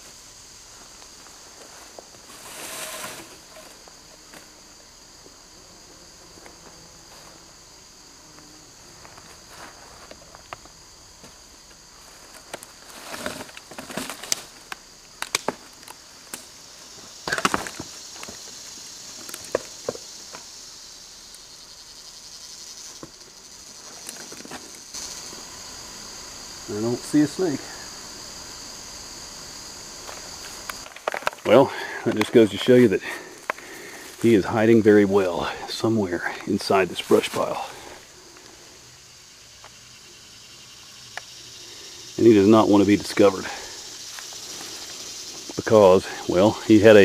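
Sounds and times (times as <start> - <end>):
insects trilling: 0.0 - 47.0
dry sticks snapping and rustling: 12.2 - 16.5, 30.1 - 31.5.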